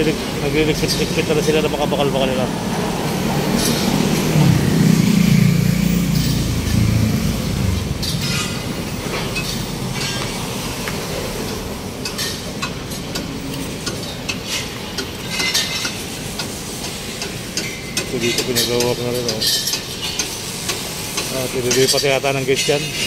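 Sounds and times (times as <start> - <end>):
steady traffic noise: 0.0 - 23.0
vehicle engine rumbling past: 0.2 - 11.8.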